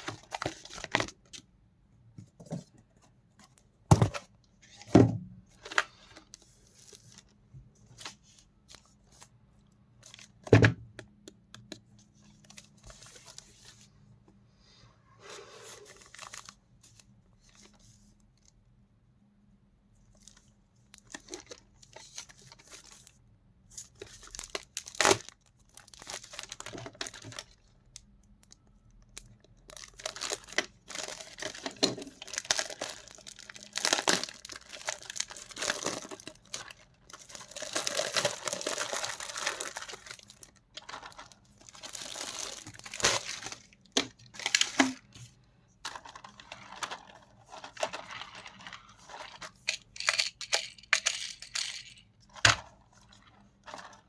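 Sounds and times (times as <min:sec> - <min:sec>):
plastic packaging crinkling and tearing: 0:15.8 - 0:16.6, 0:23.9 - 0:27.7, 0:28.4 - 0:45.2, 0:45.8 - 0:51.6.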